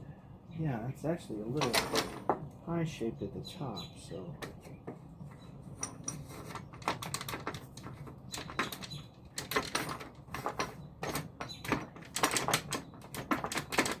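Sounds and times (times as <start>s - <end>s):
wooden pieces knocking and clicking: 1.6s - 2.5s, 4.4s - 14.0s.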